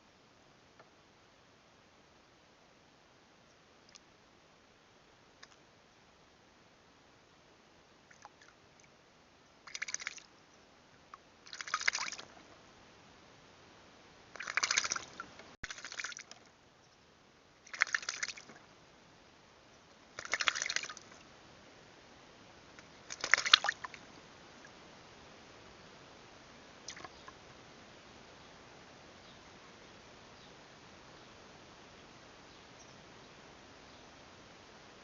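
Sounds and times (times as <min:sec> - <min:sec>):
bird flapping and splashing water: 0:09.6 - 0:10.3, 0:11.4 - 0:12.4, 0:14.3 - 0:16.4, 0:17.6 - 0:18.6, 0:20.1 - 0:21.2, 0:22.8 - 0:24.0, 0:26.9 - 0:27.2.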